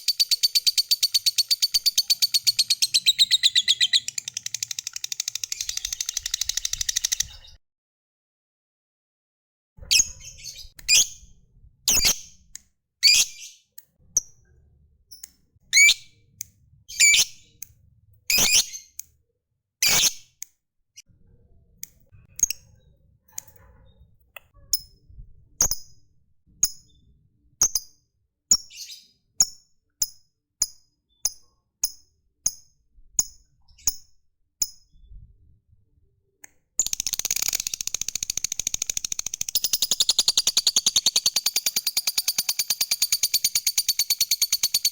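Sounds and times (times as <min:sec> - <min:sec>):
lovebird calling and trilling: 0:00.0 - 0:07.6, 0:13.0 - 0:13.6, 0:15.2 - 0:16.1, 0:16.9 - 0:17.6, 0:18.3 - 0:19.0, 0:36.8 - 0:44.9.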